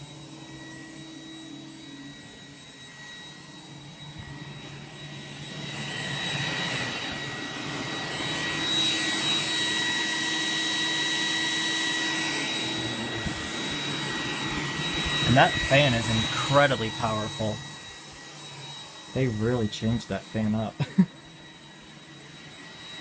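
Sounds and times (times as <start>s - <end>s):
robot vacuum running: 0.0s - 23.0s.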